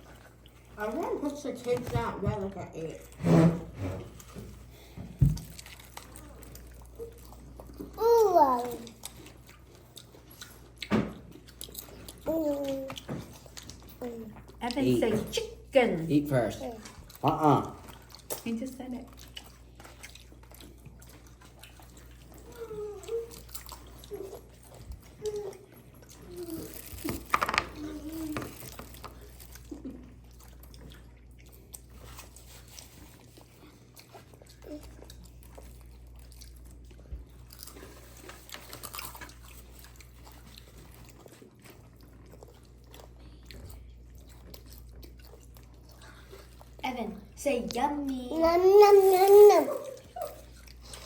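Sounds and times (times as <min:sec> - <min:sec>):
child murmuring while eating: 0:06.0 - 0:09.4, 0:11.9 - 0:14.6, 0:16.4 - 0:18.0, 0:21.4 - 0:30.3, 0:33.4 - 0:36.1, 0:45.9 - 0:51.0
crunchy chewing: 0:19.1 - 0:46.8.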